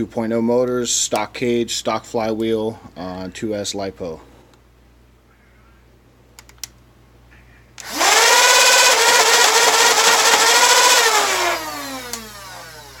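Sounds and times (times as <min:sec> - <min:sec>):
flywheel motors whining: 0:07.8 - 0:13.0.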